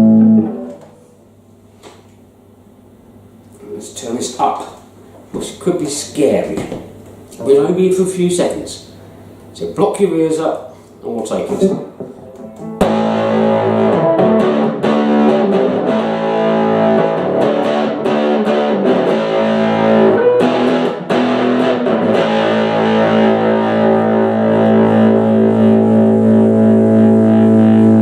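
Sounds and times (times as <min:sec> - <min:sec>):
electric guitar strummed chords: 0:00.0 - 0:01.1, 0:12.1 - 0:28.0.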